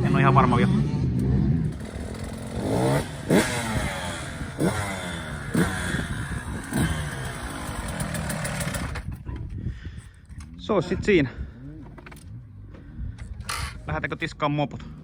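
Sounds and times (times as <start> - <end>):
motocross bike engine revving: 0.0 - 9.1.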